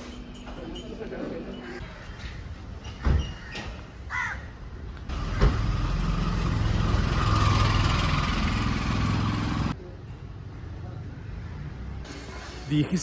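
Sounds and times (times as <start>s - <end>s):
vehicle engine running: 5.1s - 9.8s.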